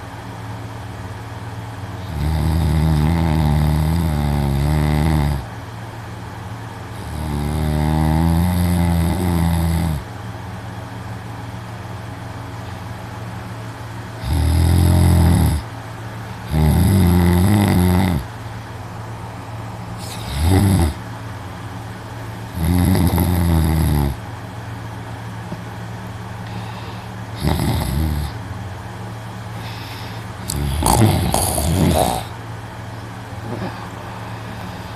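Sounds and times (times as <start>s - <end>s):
man snoring loudly: 2.0s - 5.5s, 6.9s - 10.1s, 14.2s - 15.7s, 16.4s - 18.3s, 20.0s - 21.0s, 22.5s - 24.2s, 27.4s - 28.4s, 30.4s - 32.4s.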